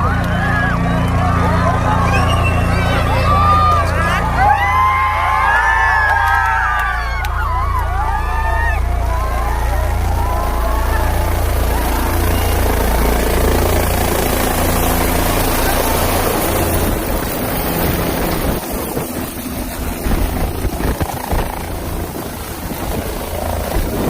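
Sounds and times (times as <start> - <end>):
helicopter rotor and engine: 0.0 - 24.0.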